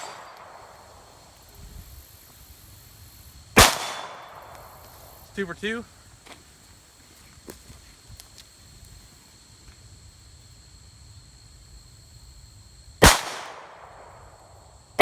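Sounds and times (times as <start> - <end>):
pistol shot with echo: 3.6 - 4.8, 13.0 - 13.9.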